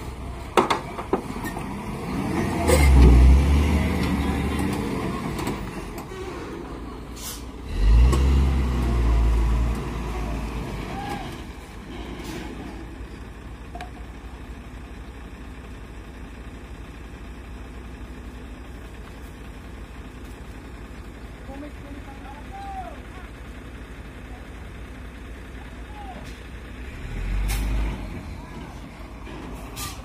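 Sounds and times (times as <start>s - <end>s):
diesel truck engine revving: 0.0s - 13.4s, 20.6s - 30.0s.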